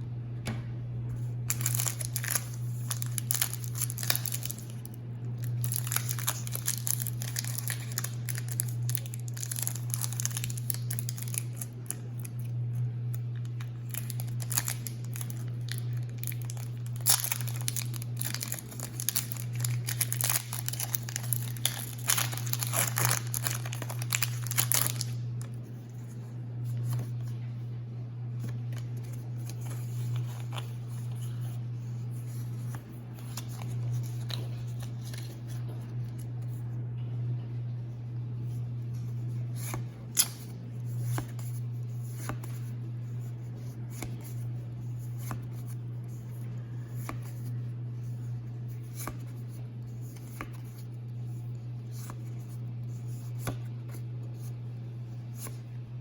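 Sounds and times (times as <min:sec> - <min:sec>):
steady low hum: 0:00.0 - 0:56.0
foil wrappers crinkling and tearing: 0:01.5 - 0:25.6, 0:28.7 - 0:31.2, 0:32.6 - 0:36.2, 0:40.1 - 0:40.5.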